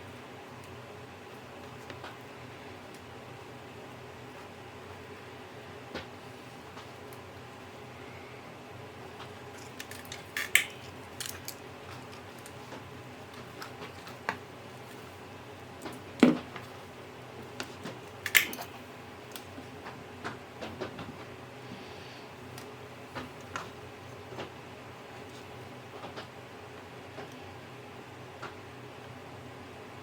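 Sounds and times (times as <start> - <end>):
hand tools clicking and tapping: 9.6 - 12.8, 18.2 - 18.7.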